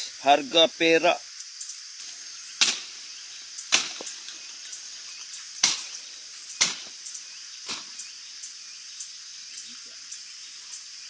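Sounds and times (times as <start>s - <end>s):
insects chirring: 0.0s - 11.0s
sharp strikes: 2.6s - 3.0s, 3.7s - 4.1s, 5.6s - 6.0s, 6.6s - 7.0s.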